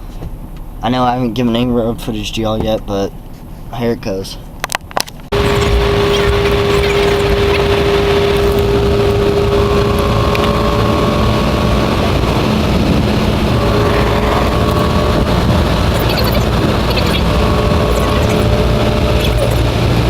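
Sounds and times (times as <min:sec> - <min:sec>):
road noise: 0:00.0 - 0:20.0
car engine: 0:04.5 - 0:20.0
faint drone: 0:05.3 - 0:20.0.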